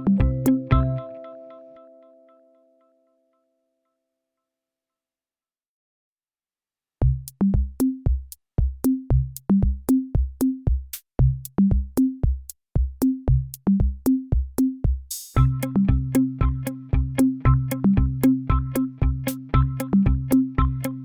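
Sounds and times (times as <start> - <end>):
electronic music drum-machine beat: 0.0 - 1.0, 7.0 - 21.0.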